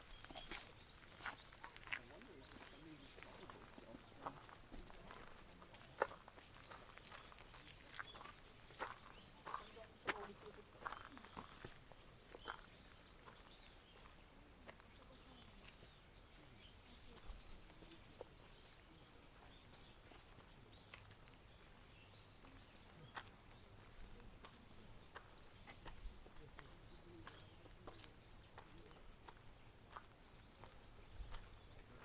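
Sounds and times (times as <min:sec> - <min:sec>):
faint bird chirps: 0:00.0 - 0:04.6.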